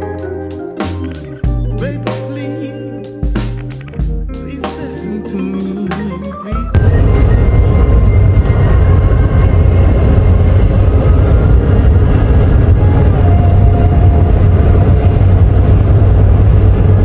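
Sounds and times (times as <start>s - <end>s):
vehicle interior rumble with hiss: 6.8s - 17.0s.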